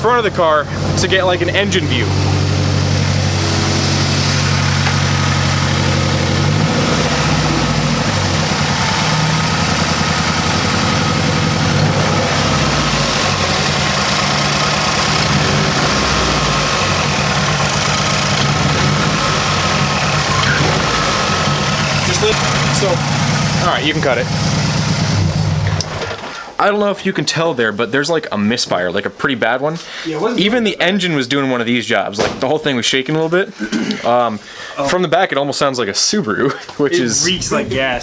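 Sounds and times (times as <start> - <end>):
car engine idling roughly with misfire: 0.0 - 26.4.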